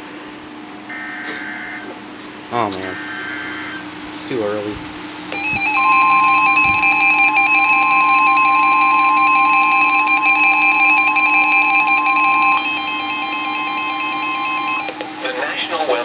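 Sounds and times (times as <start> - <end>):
steady warning alarm beep: 5.3 - 15.3.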